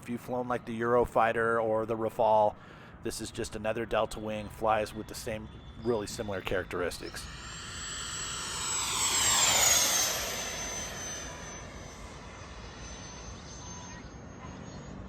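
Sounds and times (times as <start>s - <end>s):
electric jet fan whine flyby: 5.9s - 15.0s.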